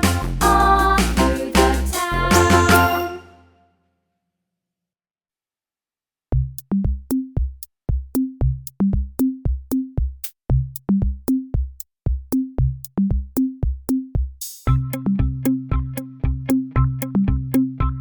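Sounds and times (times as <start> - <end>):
electronic drum machine beat: 0.0 - 3.1, 6.4 - 17.6.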